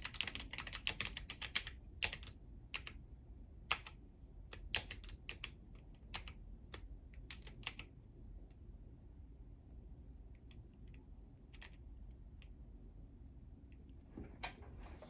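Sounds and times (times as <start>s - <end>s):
clicky mechanical keyboard typing: 0.0s - 3.0s, 3.7s - 6.4s, 7.3s - 7.9s.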